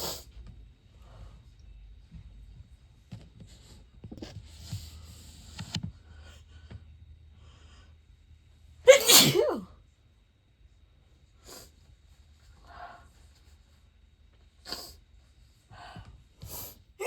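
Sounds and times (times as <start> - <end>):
person sneezing: 8.9 - 9.7.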